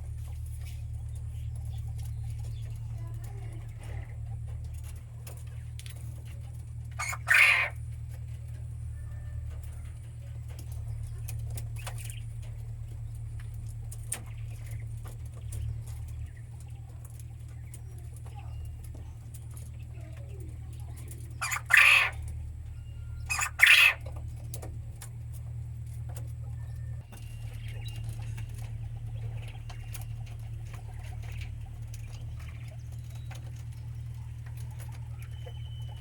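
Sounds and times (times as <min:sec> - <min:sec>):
steady low hum: 0:00.0 - 0:36.0
quail calling: 0:06.9 - 0:07.8, 0:21.2 - 0:24.3.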